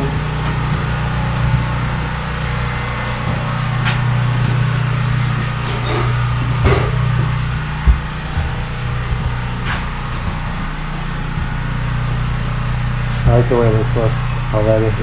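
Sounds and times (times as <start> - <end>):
short knocks: 0.0 - 10.5
low machine hum: 0.0 - 15.0.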